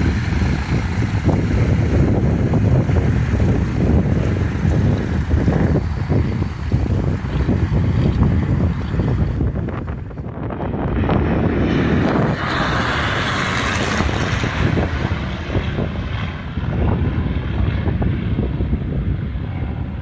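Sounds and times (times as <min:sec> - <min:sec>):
propeller aircraft engine: 0:00.0 - 0:20.0
wind buffeting microphone: 0:00.0 - 0:20.0.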